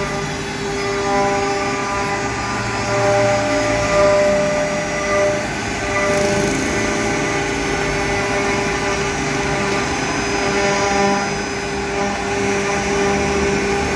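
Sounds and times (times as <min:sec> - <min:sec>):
cnc router machine whine: 0:00.0 - 0:13.9.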